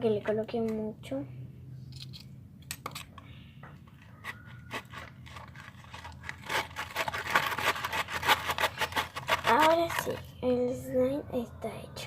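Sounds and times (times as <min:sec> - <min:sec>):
slime stirred with a spoon: 0:03.9 - 0:10.4.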